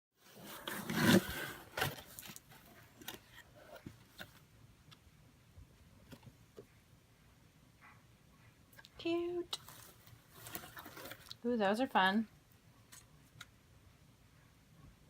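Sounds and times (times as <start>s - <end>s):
cardboard packaging rustling: 0.3s - 4.4s, 9.6s - 11.4s.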